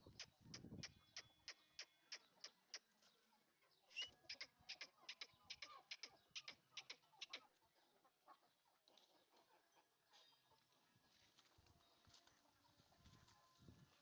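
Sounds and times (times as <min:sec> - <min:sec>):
chicken chirp: 0:00.0 - 0:10.6
chickens peeping: 0:00.0 - 0:10.8.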